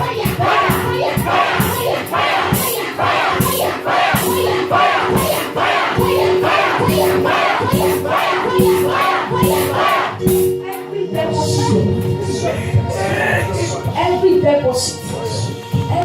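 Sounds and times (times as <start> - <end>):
crowd chanting in unison: 0.0 - 11.4.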